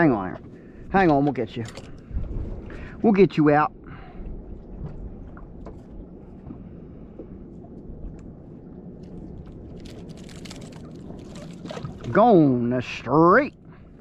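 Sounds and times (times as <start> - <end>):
low wind: 0.0 - 14.0
water around a boat: 0.0 - 14.0.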